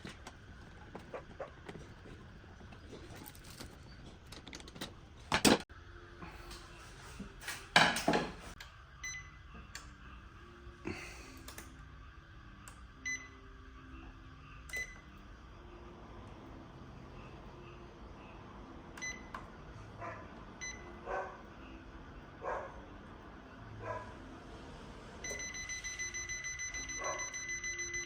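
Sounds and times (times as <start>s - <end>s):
short electronic beeps: 25.2s - 28.0s.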